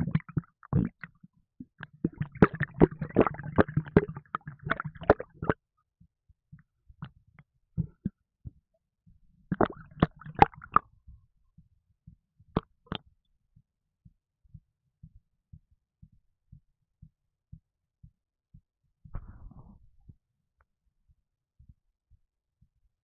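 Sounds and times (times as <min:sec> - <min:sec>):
stomach gurgling: 0:00.0 - 0:05.6, 0:07.8 - 0:08.2, 0:09.5 - 0:10.9
soft regular thump: 0:19.1 - 0:19.8.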